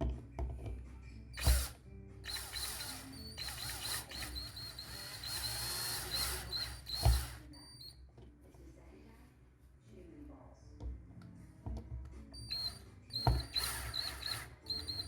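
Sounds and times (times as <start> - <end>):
power drill whining: 1.4 - 7.9, 12.4 - 15.0.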